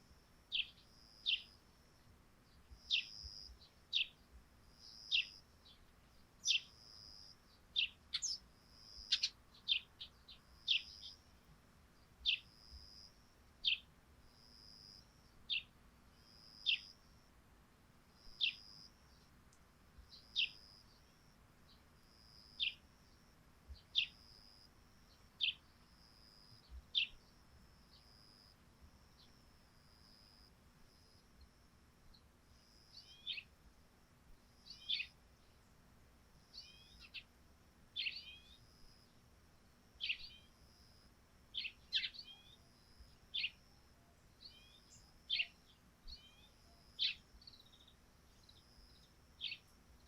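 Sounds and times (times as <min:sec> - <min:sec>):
sparrows chirping: 0:00.5 - 0:01.6, 0:02.5 - 0:11.3, 0:12.0 - 0:13.0, 0:13.6 - 0:17.0, 0:18.3 - 0:19.3, 0:20.1 - 0:21.8, 0:22.4 - 0:22.8, 0:23.7 - 0:24.4, 0:25.1 - 0:25.8, 0:26.6 - 0:28.2, 0:32.9 - 0:33.5, 0:34.6 - 0:35.6, 0:36.5 - 0:37.3, 0:38.0 - 0:38.6, 0:40.0 - 0:40.6, 0:41.5 - 0:43.6, 0:44.2 - 0:49.8.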